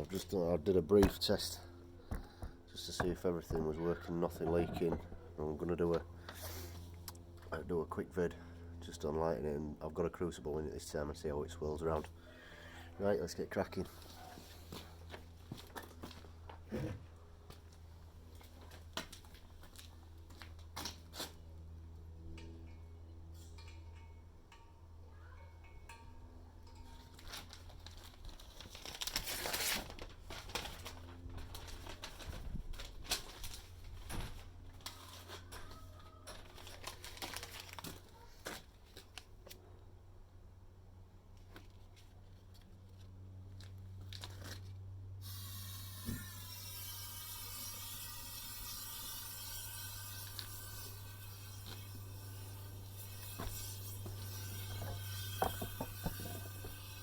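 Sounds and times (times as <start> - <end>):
low steady hum: 0.0 - 37.8.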